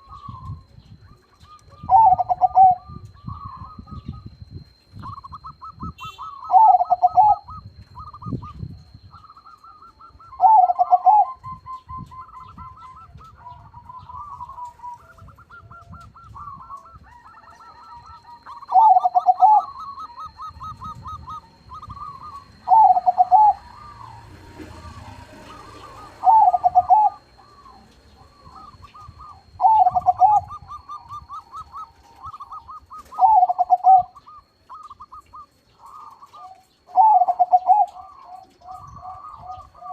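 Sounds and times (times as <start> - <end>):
doves cooing with trilled notes: 0.0 - 39.9
softer trilled coos: 0.0 - 39.9.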